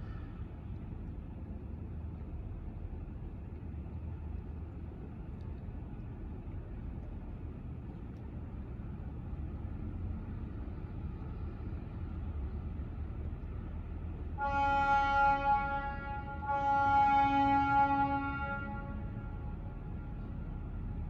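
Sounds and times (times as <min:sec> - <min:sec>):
low harbour rumble: 0:00.0 - 0:21.0
ship's horn blast: 0:14.4 - 0:21.0.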